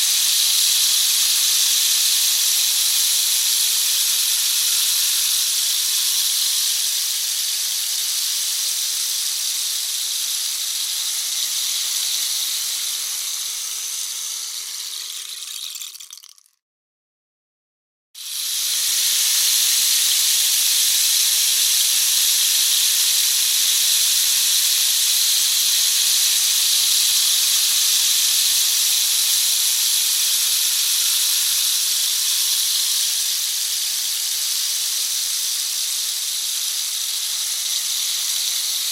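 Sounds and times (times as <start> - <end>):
rain stick pellets cascading: 0.1 - 16.6, 35.5 - 38.9.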